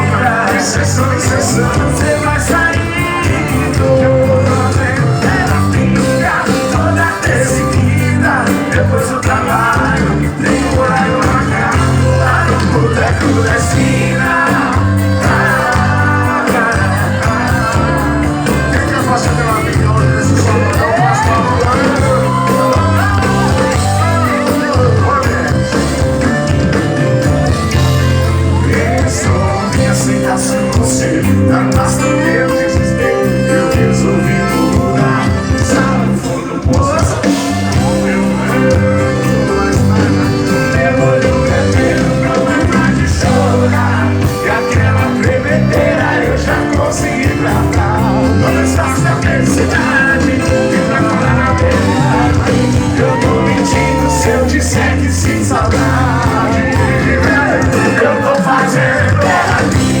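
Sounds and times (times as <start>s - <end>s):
loud rock music with singing: 0.0s - 60.0s.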